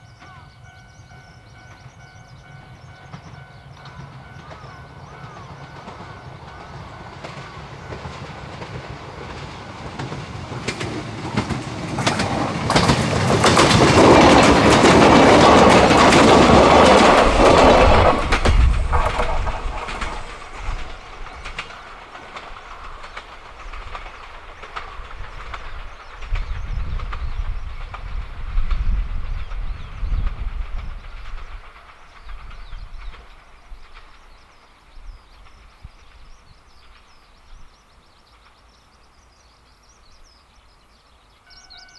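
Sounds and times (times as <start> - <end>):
electric train passing: 0.1 - 33.3
wheels clacking over rail joints: 3.1 - 34.3.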